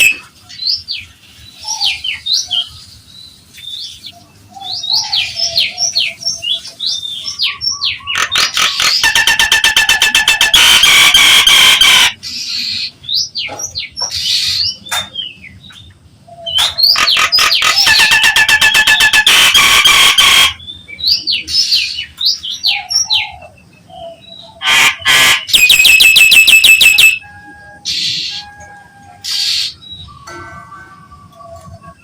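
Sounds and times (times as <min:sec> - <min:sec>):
myna rattling calls: 0:07.9 - 0:12.7, 0:16.5 - 0:20.6, 0:24.6 - 0:27.2
bird gliding whistles: 0:24.9 - 0:32.0.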